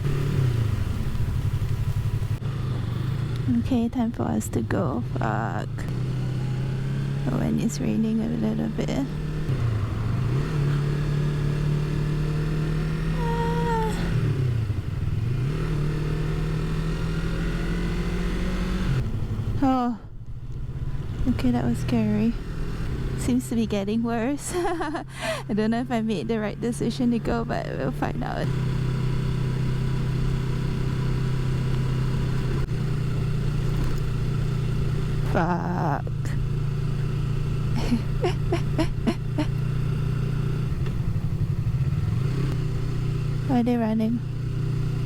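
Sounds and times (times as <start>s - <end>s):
motorcycle engine running: 0.0s - 45.0s.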